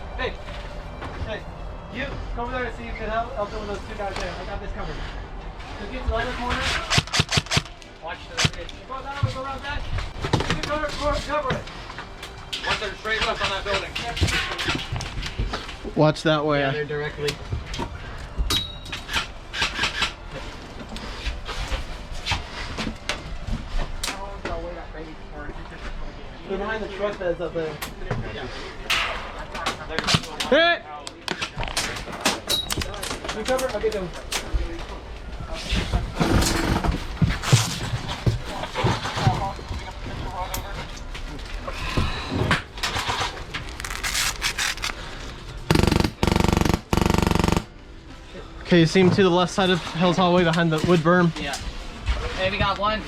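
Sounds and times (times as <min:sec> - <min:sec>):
airsoft rifle full-auto fire: 0:06.9 - 0:07.7, 0:45.7 - 0:47.7
gear and clothing rustling: 0:42.9 - 0:46.7.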